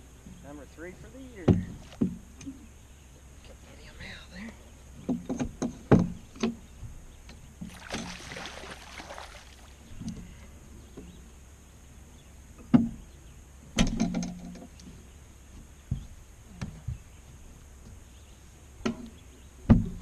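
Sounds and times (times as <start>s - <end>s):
knocks and clunks on boat: 0.3s - 2.6s, 5.0s - 11.2s, 12.6s - 14.9s, 18.8s - 20.0s.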